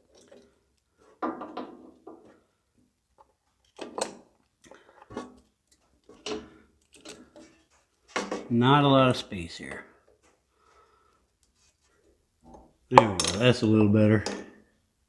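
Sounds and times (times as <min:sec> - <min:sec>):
tools knocking and scraping metal: 0:13.0 - 0:13.5.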